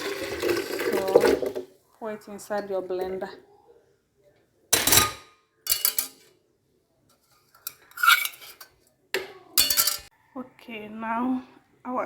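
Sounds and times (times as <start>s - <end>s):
metal utensils clattering on dishes: 4.8s - 6.3s, 7.5s - 10.1s.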